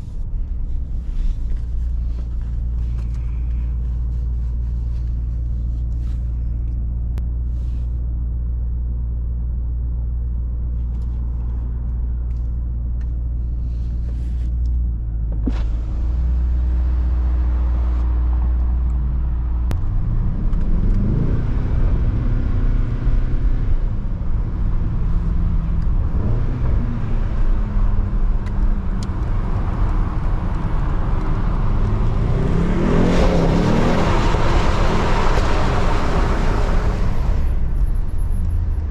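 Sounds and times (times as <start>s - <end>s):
car engine revving: 15.4s - 38.9s.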